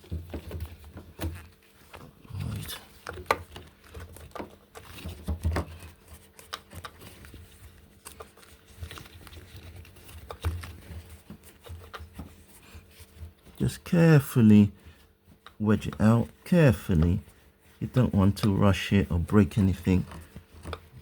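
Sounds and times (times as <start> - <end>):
hard plastic clicking and scraping: 0.0 - 13.6, 19.6 - 21.0.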